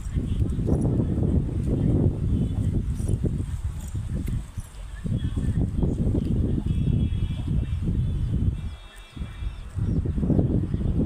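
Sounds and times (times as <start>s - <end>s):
drawn-out high bird call: 6.6s - 11.0s.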